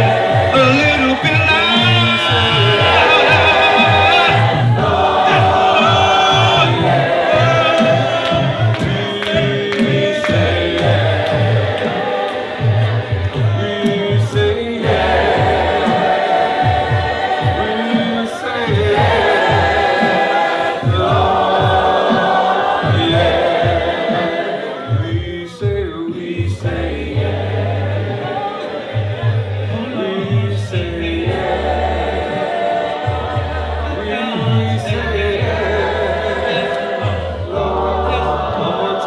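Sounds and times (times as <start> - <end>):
choir and congregation singing: 0.0 - 39.0.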